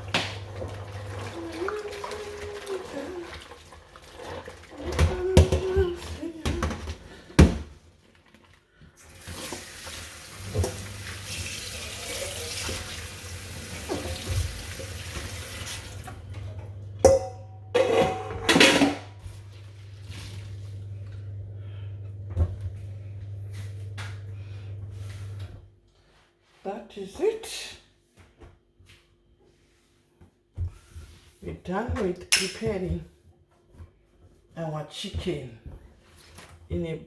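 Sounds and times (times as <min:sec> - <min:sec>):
tap running into a sink: 0:09.2 - 0:16.2.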